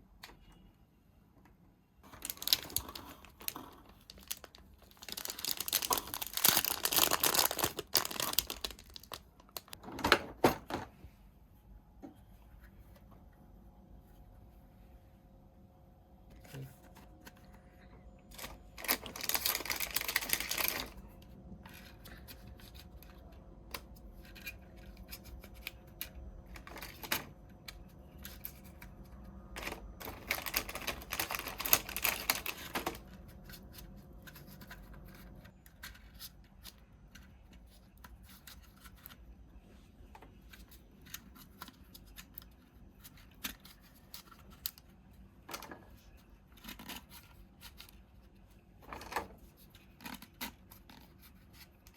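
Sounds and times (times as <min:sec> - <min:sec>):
plastic packaging rustling: 0:02.0 - 0:09.8, 0:18.4 - 0:21.0, 0:29.5 - 0:33.7.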